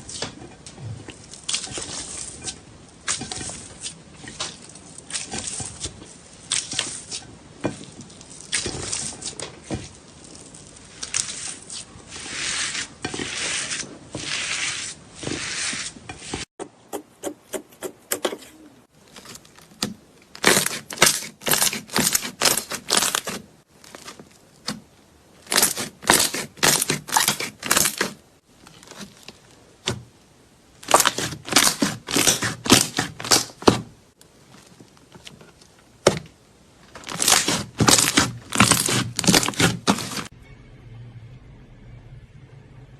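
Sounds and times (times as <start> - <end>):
slime crackling and popping: 19.1 - 24.8, 25.4 - 30.0, 30.8 - 33.8, 36.9 - 40.3.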